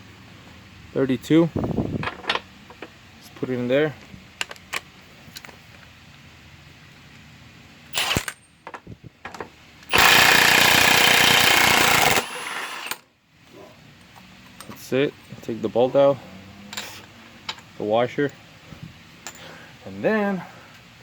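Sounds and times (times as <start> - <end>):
impact wrench rattling: 8.0 - 8.5, 9.9 - 13.0.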